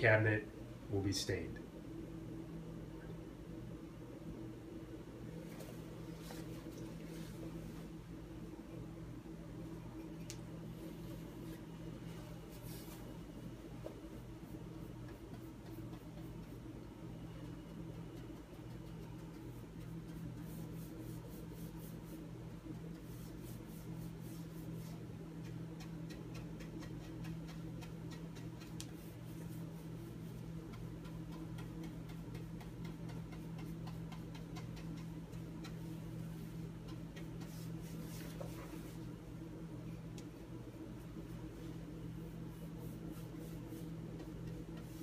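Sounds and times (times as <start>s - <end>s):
paintbrush scratching on wood: 14.2s - 16.7s, 18.0s - 39.1s, 41.0s - 45.0s.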